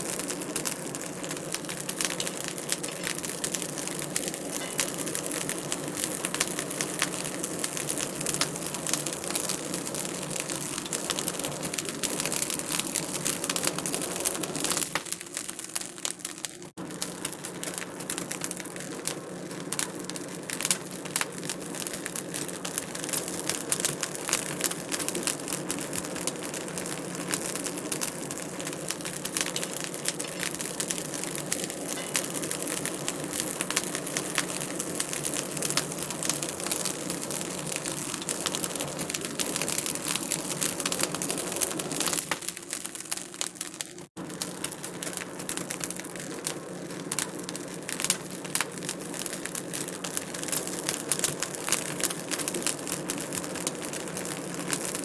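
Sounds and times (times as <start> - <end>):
fire hiss: 0.0 - 42.8
wood fire crackling: 0.0 - 55.0.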